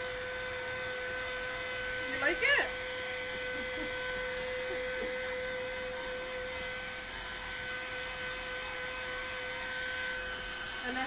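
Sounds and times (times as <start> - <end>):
hair dryer running: 0.0 - 11.0.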